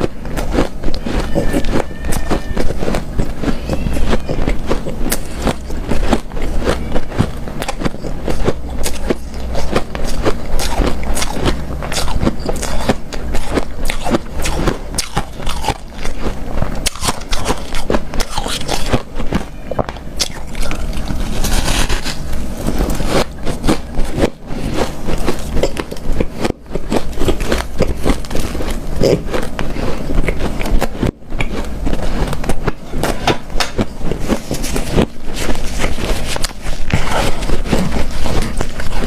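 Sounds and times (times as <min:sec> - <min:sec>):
chewing crunchy ice: 0:00.0 - 0:39.0.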